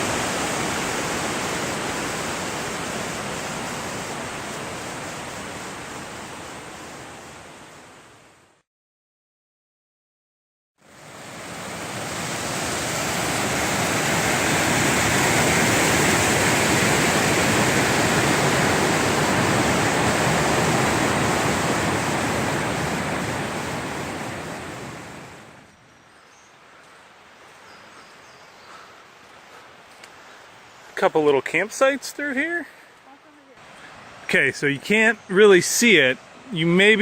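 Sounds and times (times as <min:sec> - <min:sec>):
waterfall rushing: 0:00.0 - 0:07.7, 0:10.9 - 0:25.6.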